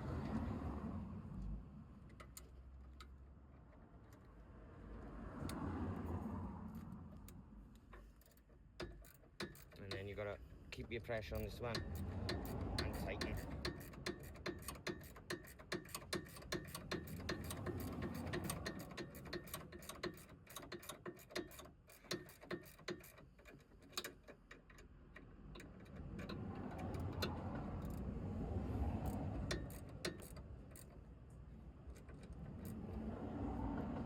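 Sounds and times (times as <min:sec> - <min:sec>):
ratchet clicking: 0:07.2 - 0:10.3, 0:11.1 - 0:31.1, 0:31.8 - 0:33.4.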